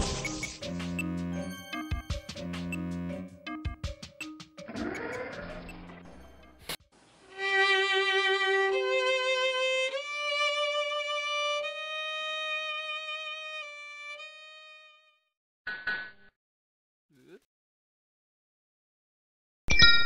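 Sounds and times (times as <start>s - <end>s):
violin with vibrato: 7.3s - 15.1s.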